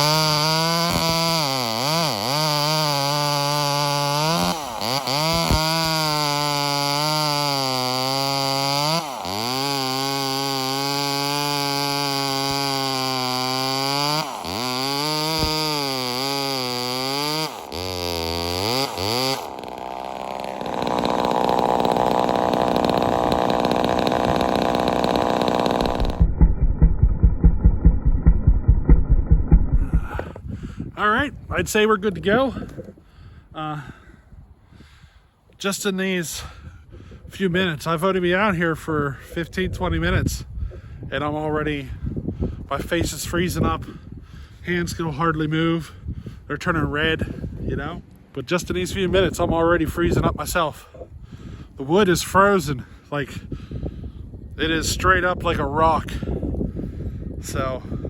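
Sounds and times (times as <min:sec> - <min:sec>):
chainsaw cutting at high revs: 0:00.0 - 0:26.3
rapid low pulsing: 0:19.4 - 0:31.8.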